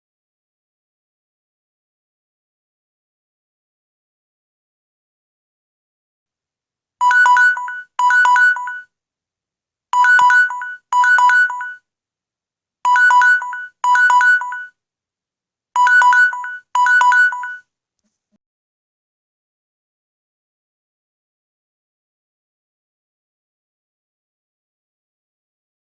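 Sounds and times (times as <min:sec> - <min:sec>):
two-pitch electronic alarm beeps: 0:07.0 - 0:08.8, 0:10.0 - 0:11.8, 0:12.9 - 0:14.7, 0:15.8 - 0:17.6.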